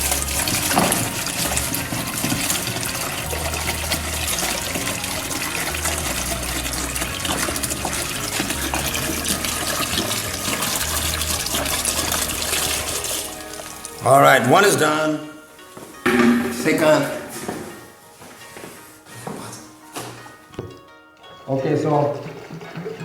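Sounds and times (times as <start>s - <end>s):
liquid pouring into a bucket: 0.0s - 14.2s, 22.0s - 23.0s.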